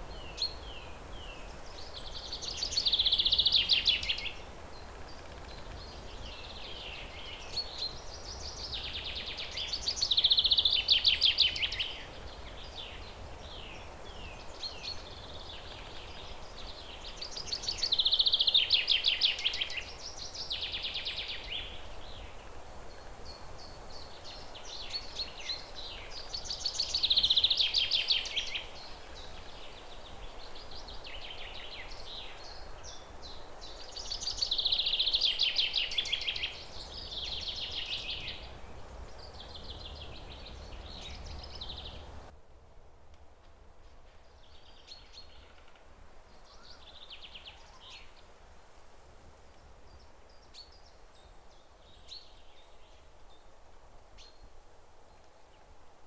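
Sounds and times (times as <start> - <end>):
songbird singing trills: 0.0 - 4.4, 23.3 - 42.3
steady background hiss: 0.0 - 56.0.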